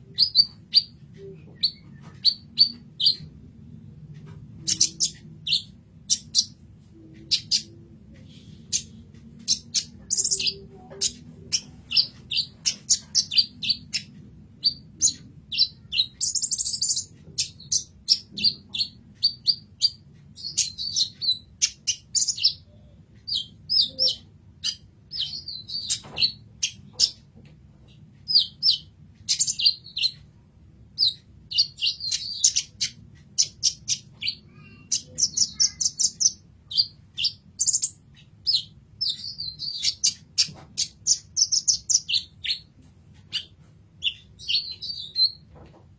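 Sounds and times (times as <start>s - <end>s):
sunbird chirping and trilling: 0.0s - 3.3s, 8.4s - 27.2s, 31.0s - 42.7s, 43.3s - 45.4s
low steady hum: 0.0s - 45.9s.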